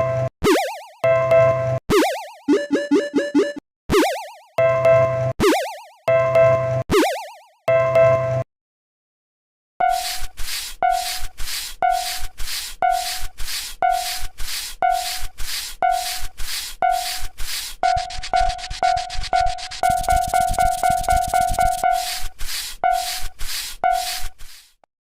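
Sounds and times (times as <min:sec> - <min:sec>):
level crossing alarm bell ringing: 0:09.8 - 0:24.4.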